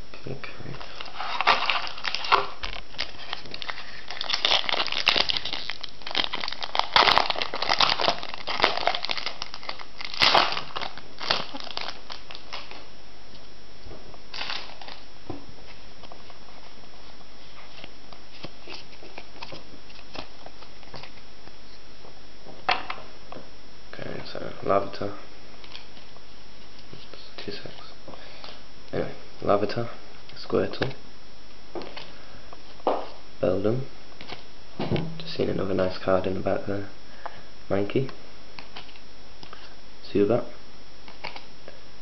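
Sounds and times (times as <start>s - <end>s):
plastic wrapper crinkling and tearing: 0.8s - 12.9s, 14.3s - 15.1s, 17.6s - 21.2s.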